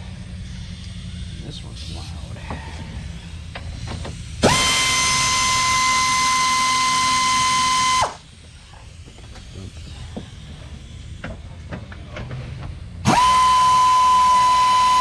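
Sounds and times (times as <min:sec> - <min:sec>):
power tool motor whining: 0:00.0 - 0:15.0.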